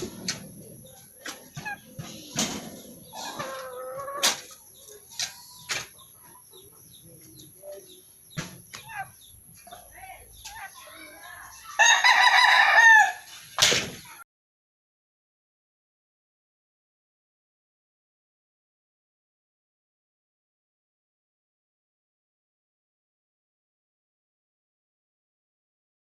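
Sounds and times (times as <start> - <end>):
rooster crowing: 11.8 - 13.3.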